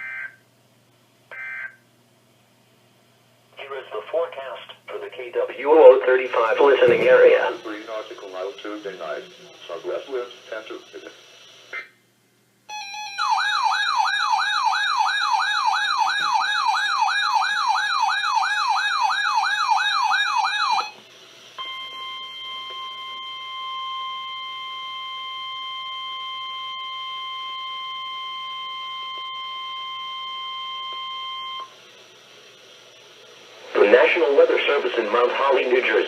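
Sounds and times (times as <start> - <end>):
warbling electronic siren: 12.7 - 21.0, 21.6 - 31.8
steady alarm tone: 12.7 - 32.3.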